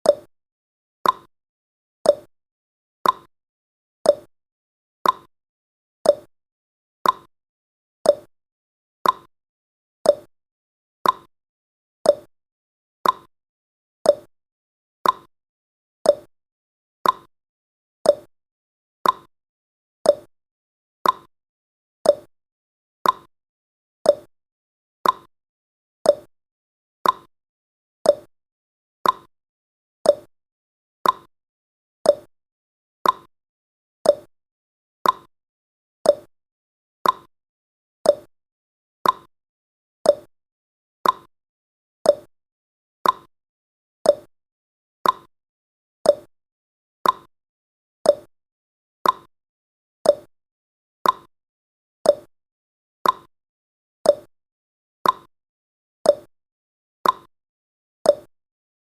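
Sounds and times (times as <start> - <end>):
timer ticking: 0.0 - 0.3, 1.0 - 1.3, 2.1 - 2.3, 3.0 - 3.3, 4.1 - 4.3, 5.0 - 5.3, 6.1 - 6.3, 7.0 - 7.3, 8.1 - 8.3, 9.0 - 9.3, 10.1 - 10.3, 11.0 - 11.3, 12.1 - 12.3, 13.0 - 13.3, 14.1 - 14.3, 15.0 - 15.3, 16.1 - 16.3, 17.0 - 17.3, 18.1 - 18.3, 19.0 - 19.3, 20.1 - 20.3, 21.0 - 21.3, 22.0 - 22.3, 23.0 - 23.3, 24.1 - 24.3, 25.0 - 25.3, 26.1 - 26.3, 27.0 - 27.3, 28.0 - 28.3, 29.0 - 29.3, 30.0 - 30.3, 31.0 - 31.3, 32.1 - 32.3, 33.0 - 33.3, 34.0 - 34.3, 35.0 - 35.3, 36.0 - 36.3, 37.0 - 37.3, 38.1 - 38.3, 39.0 - 39.3, 40.1 - 40.3, 41.0 - 41.3, 42.1 - 42.3, 43.0 - 43.3, 44.1 - 44.3, 45.0 - 45.3, 46.1 - 46.3, 47.0 - 47.3, 48.1 - 48.3, 49.0 - 49.3, 50.1 - 50.3, 51.0 - 51.3, 52.1 - 52.3, 53.0 - 53.3, 54.1 - 54.3, 55.0 - 55.3, 56.1 - 56.3, 57.0 - 57.3, 58.1 - 58.3.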